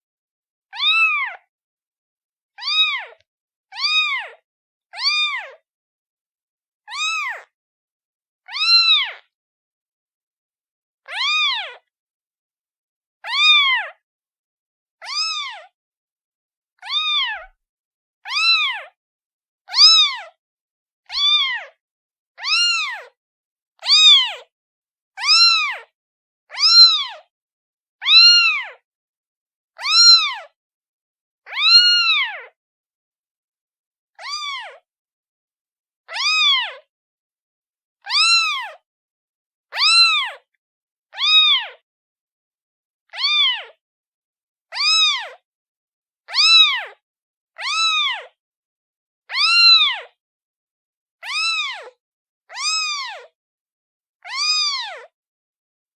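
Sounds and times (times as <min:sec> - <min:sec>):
kitten meowing: 0:00.7 - 0:01.5, 0:02.6 - 0:05.6, 0:06.9 - 0:07.5, 0:08.5 - 0:09.2, 0:11.0 - 0:11.8, 0:13.2 - 0:14.0, 0:15.0 - 0:15.7, 0:16.8 - 0:17.6, 0:18.3 - 0:19.0, 0:19.7 - 0:20.3, 0:21.1 - 0:21.8, 0:22.4 - 0:23.2, 0:23.8 - 0:24.4, 0:25.2 - 0:25.9, 0:26.5 - 0:27.3, 0:28.0 - 0:28.8, 0:29.8 - 0:30.6, 0:31.5 - 0:32.6, 0:34.2 - 0:34.8, 0:36.1 - 0:36.8, 0:38.1 - 0:38.8, 0:39.7 - 0:40.5, 0:41.2 - 0:41.8, 0:43.1 - 0:43.8, 0:44.7 - 0:45.4, 0:46.3 - 0:47.0, 0:47.6 - 0:48.4, 0:49.3 - 0:50.2, 0:51.2 - 0:53.3, 0:54.2 - 0:55.0.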